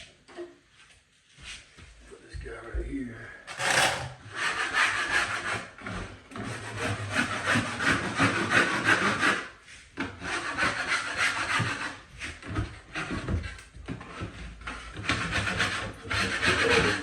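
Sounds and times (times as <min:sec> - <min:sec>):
tool scraping drywall: 0:03.5 - 0:17.0.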